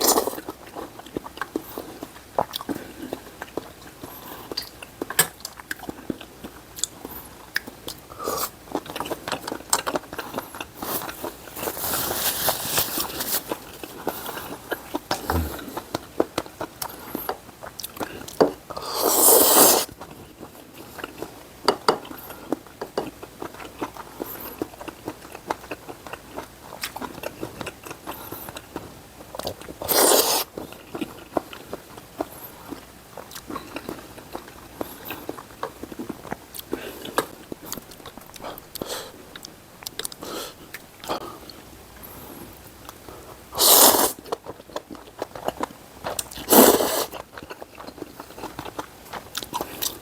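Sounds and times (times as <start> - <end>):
chewing noodles: 0.0 - 50.0
loud slurps: 18.8 - 19.9, 29.8 - 30.5, 43.6 - 44.2, 46.5 - 47.2.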